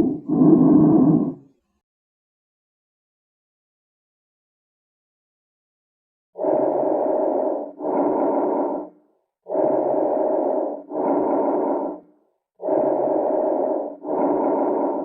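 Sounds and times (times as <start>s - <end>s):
lung breath sounds: 0.0s - 1.5s, 6.4s - 15.0s.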